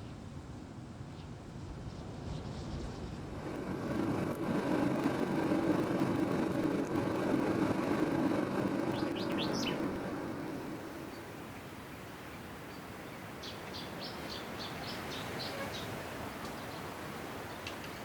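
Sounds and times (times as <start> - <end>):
bird chirping rising notes: 8.8 - 11.6.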